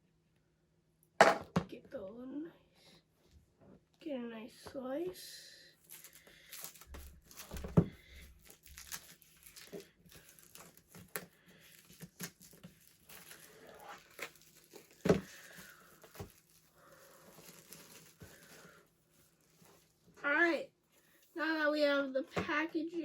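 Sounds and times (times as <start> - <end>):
packaging crinkling and tearing: 5.8 - 20.0.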